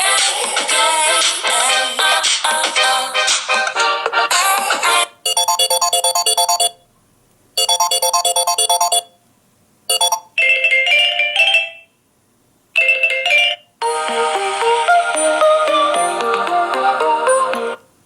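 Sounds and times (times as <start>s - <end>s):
phone ringtone melodies: 5.3s - 6.8s, 7.6s - 9.1s, 9.9s - 11.9s, 12.8s - 17.8s.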